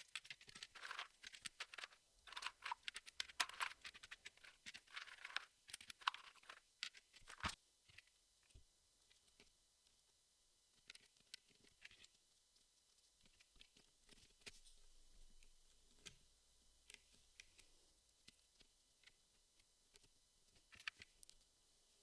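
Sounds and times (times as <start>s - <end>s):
puzzle pieces clicking and rustling: 0.1s - 7.6s.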